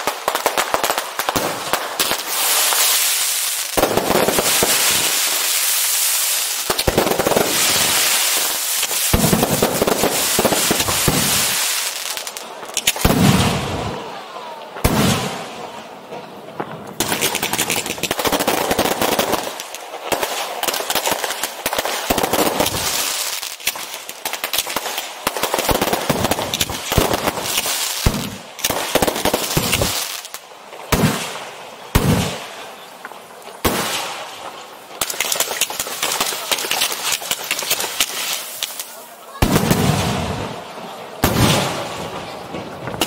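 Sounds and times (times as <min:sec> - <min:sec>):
firecrackers crackling: 0:00.0 - 0:43.0.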